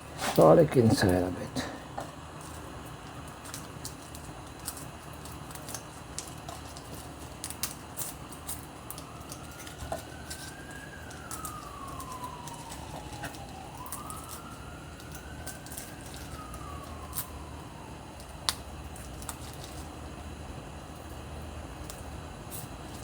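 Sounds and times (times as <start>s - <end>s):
emergency siren wailing: 0.4s - 1.8s, 5.7s - 21.4s.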